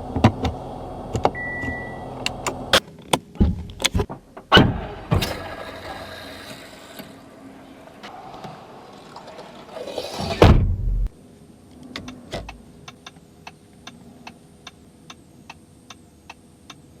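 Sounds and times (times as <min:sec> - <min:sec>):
loud thump: 0:04.5 - 0:05.4, 0:10.2 - 0:11.1.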